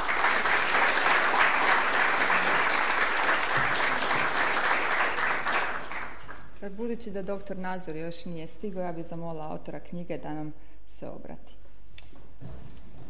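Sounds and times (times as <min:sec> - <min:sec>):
audience applauding: 0:00.0 - 0:06.6.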